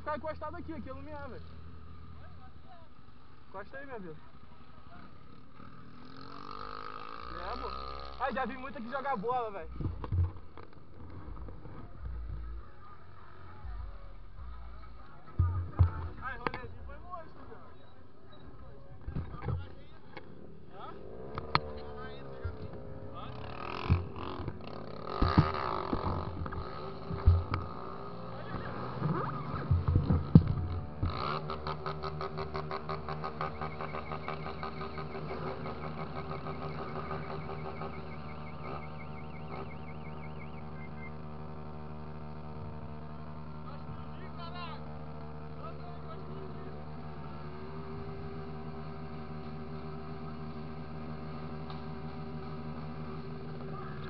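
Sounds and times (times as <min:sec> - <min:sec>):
motorcycle engine running slowly: 0:00.0 - 0:54.0
knocks on microphone: 0:15.4 - 0:16.6
fast even pulsing: 0:21.0 - 0:41.6.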